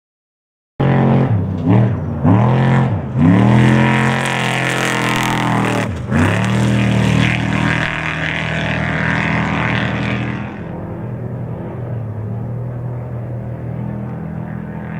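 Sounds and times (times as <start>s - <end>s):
race truck engine revving: 0.8s - 14.9s.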